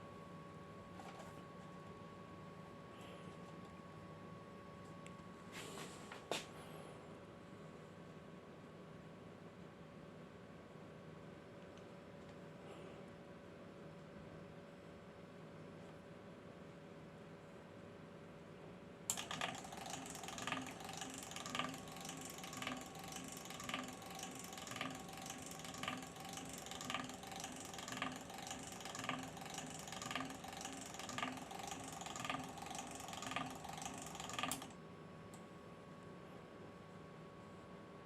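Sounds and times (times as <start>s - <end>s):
geared motor ratcheting clatter: 19.1s - 34.8s.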